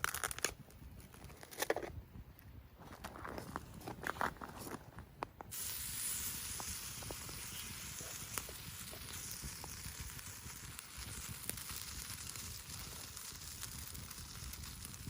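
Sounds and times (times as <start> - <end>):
small pops: 0.0 - 15.0
food sizzling on hot plate: 5.5 - 15.0.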